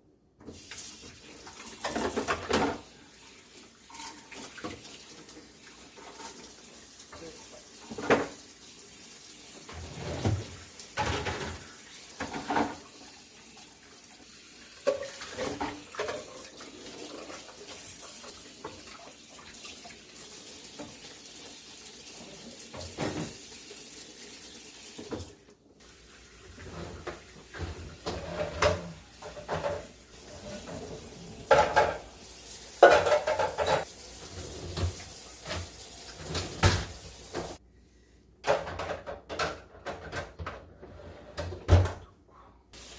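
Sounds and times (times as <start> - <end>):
water running from a tap: 0.5 - 37.6
dishes and containers clattering: 1.4 - 2.9, 3.9 - 5.0, 7.8 - 8.4, 9.6 - 13.0, 14.8 - 19.0, 22.2 - 23.5, 26.5 - 32.2, 32.8 - 37.6, 38.4 - 42.0.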